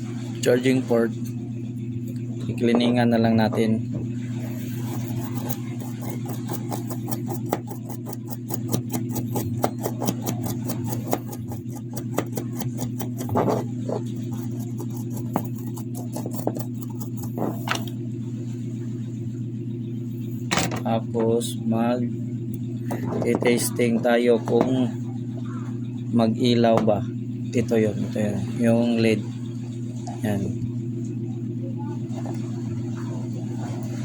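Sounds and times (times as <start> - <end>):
low background hum: 0.0 - 34.0
scratchy cleaning strokes: 4.4 - 17.9.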